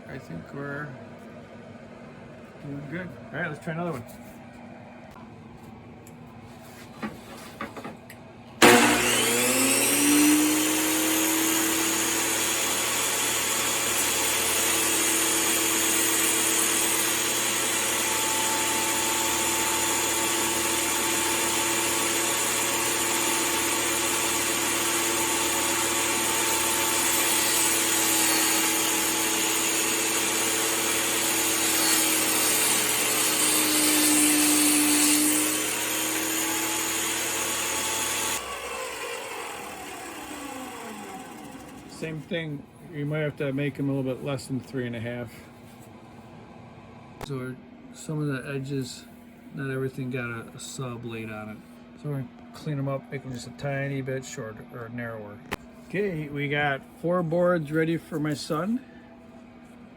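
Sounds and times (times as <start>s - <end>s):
table saw ripping a board: 8.6s - 42.0s.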